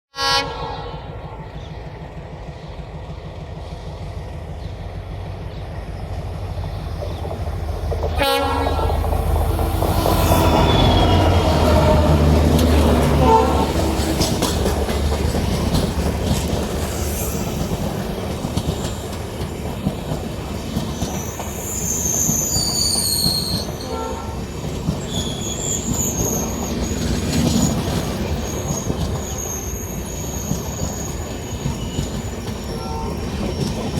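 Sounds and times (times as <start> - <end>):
locomotive horn blasts: 0.1 - 1.3, 8.1 - 9.2, 13.0 - 14.4, 23.8 - 24.5
locomotive engine rumbling: 0.2 - 33.9
train coaches clattering over rails: 0.8 - 33.9
high-pitched wheel squeals: 10.0 - 12.1, 20.9 - 24.3, 24.9 - 33.9.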